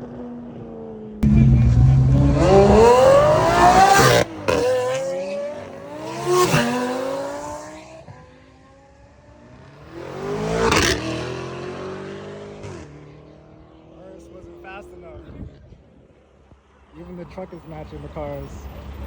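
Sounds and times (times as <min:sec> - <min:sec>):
car revving and passing: 0:00.0 - 0:15.0
car accelerating hard: 0:01.2 - 0:14.0.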